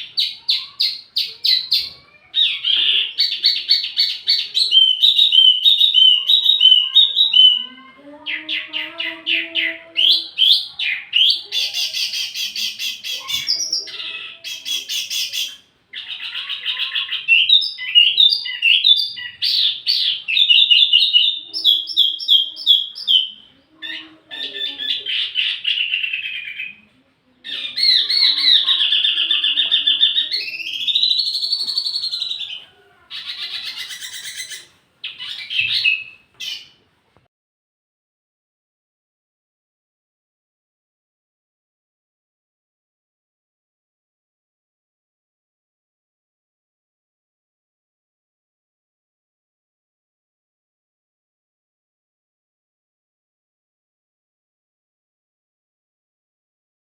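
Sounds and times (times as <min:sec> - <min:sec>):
songbird chattering trills: 0:27.5 - 0:36.7.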